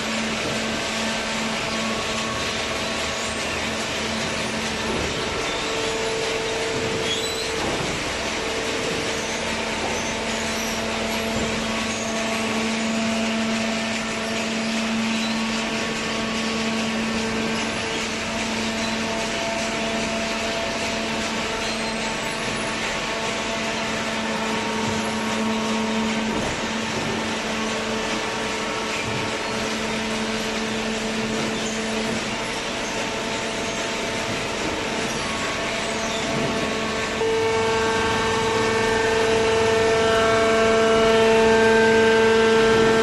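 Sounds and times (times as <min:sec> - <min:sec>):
machine hum and hiss: 0:00.0 - 0:43.0
humming tone: 0:34.6 - 0:43.0.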